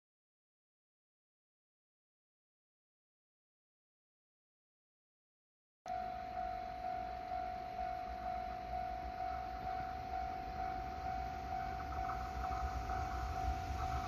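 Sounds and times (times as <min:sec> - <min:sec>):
approaching train rumble: 0:05.9 - 0:14.0
level-crossing warning bell ringing: 0:05.9 - 0:14.0.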